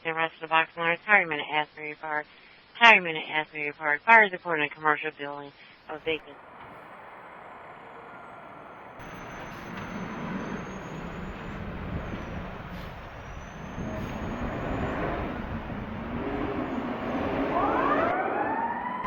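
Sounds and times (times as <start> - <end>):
road noise: 6.0 - 19.0
fire truck diesel engine: 6.2 - 18.1.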